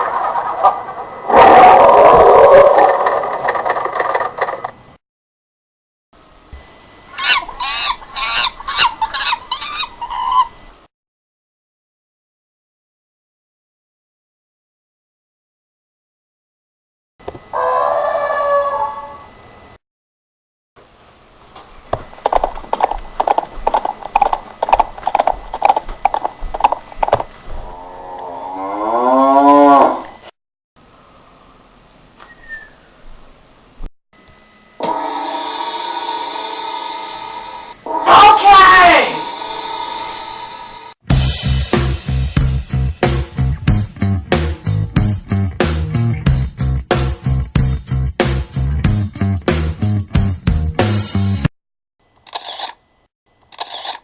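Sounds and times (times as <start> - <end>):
animal squealing calls: 7.1 - 10.6, 17.6 - 19.3, 32.3 - 32.9
cow mooing: 27.6 - 30.1.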